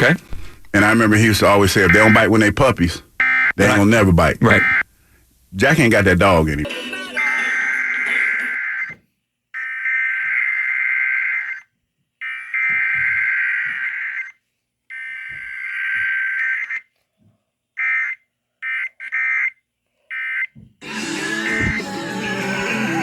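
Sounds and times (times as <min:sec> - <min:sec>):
music: 0:06.7 - 0:08.5, 0:20.8 - 0:23.0.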